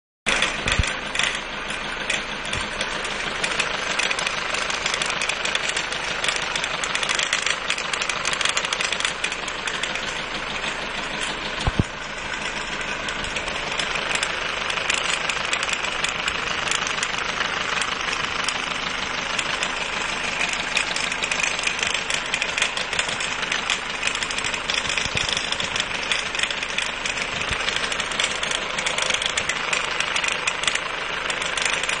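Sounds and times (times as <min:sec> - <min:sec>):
diesel engine clattering: 0:00.3 - 0:32.0
sharp engine knock: 0:02.1 - 0:32.0.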